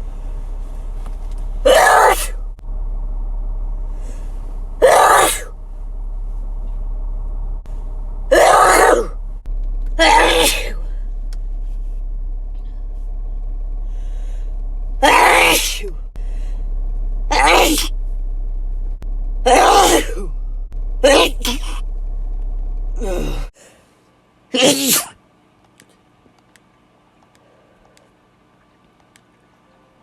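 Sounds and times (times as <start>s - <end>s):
steady background hum: 0.0s - 30.0s
person sneezing: 21.0s - 21.8s, 24.6s - 25.2s.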